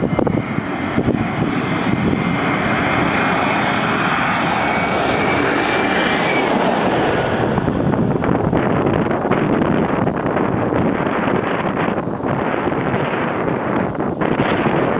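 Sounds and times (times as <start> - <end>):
high engine whine: 0.0 - 14.9
jet airliner engines landing: 0.0 - 14.9.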